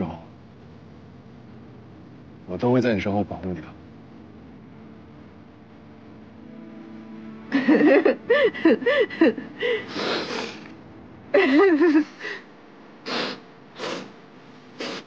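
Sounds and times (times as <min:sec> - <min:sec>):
person sobbing: 0:07.5 - 0:10.6, 0:11.4 - 0:12.5
breathy gasps and sniffs: 0:09.8 - 0:10.7.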